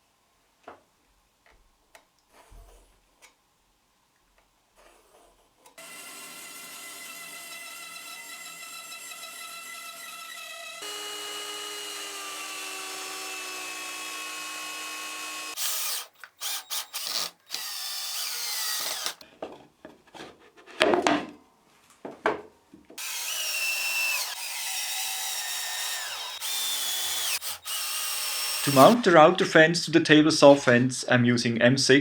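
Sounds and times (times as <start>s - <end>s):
electric drill on wood: 5.8s - 19.2s, 23.0s - 29.0s.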